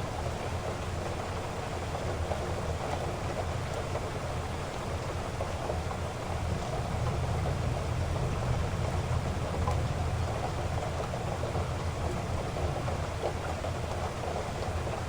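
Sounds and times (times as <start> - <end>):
heavy rain: 3.3 - 15.0.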